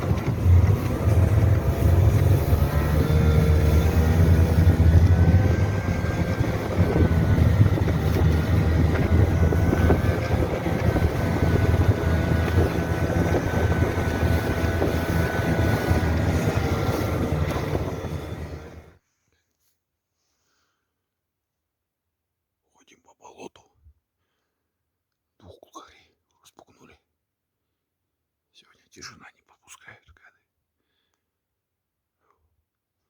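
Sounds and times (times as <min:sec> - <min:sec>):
wind on microphone: 0:00.0 - 0:18.9
vehicle engine running: 0:00.0 - 0:19.0.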